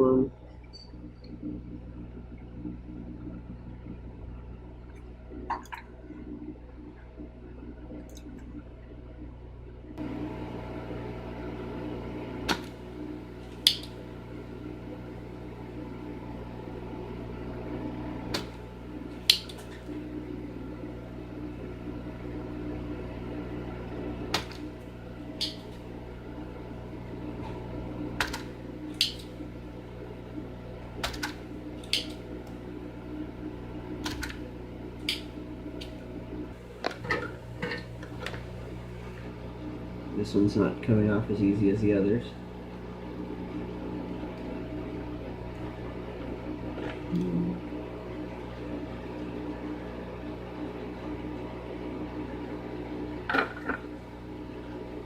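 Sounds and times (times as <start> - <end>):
low electrical hum: 0.0 - 55.0
desoldering pump clicking and snapping: 13.5 - 14.0, 19.2 - 19.9, 24.3 - 24.7, 25.3 - 25.8, 28.2 - 29.4, 31.0 - 32.6, 34.0 - 34.4, 35.0 - 36.0.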